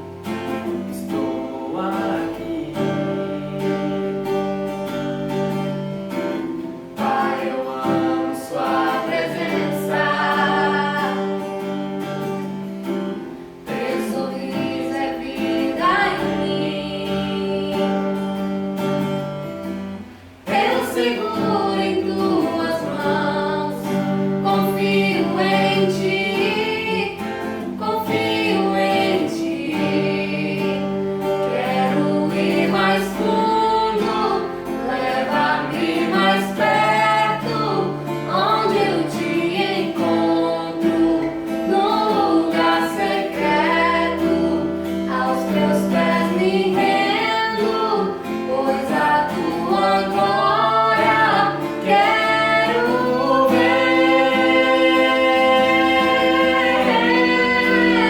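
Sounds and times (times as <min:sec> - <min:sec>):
acoustic guitar: 0:00.0 - 0:58.0
woman singing: 0:00.5 - 0:04.8, 0:06.3 - 0:11.8, 0:13.6 - 0:18.5, 0:20.5 - 0:58.0.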